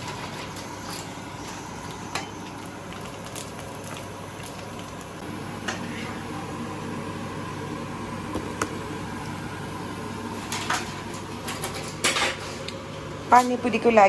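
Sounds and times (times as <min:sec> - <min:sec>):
utensils and dishes clinking: 0:00.0 - 0:02.6, 0:10.4 - 0:13.9
kitchen appliance humming: 0:00.0 - 0:14.0.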